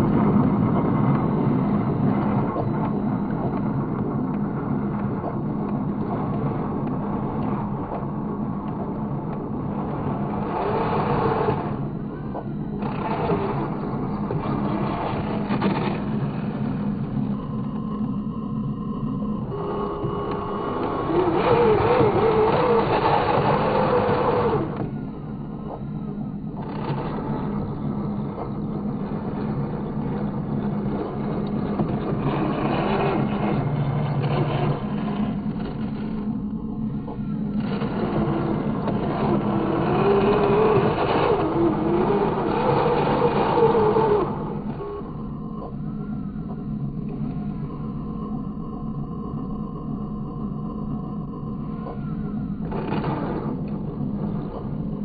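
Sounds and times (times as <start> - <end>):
steady low hum: 0.0 - 55.0
small electric motor whining: 9.3 - 25.0, 26.6 - 49.8.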